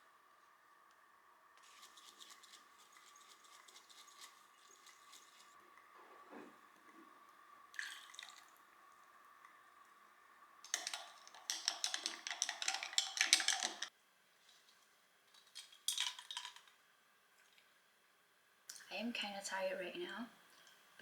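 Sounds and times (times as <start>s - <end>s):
objects clinking and clattering: 10.7s - 13.9s
small hard objects clicking: 10.7s - 13.9s, 15.6s - 16.8s.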